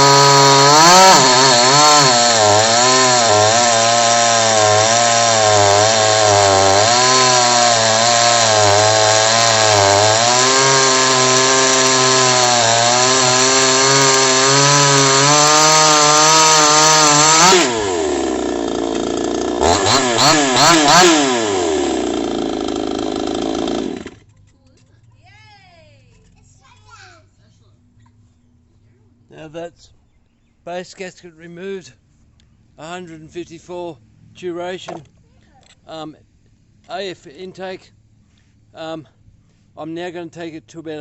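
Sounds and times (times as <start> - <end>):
chainsaw at full throttle: 0.0 - 24.2.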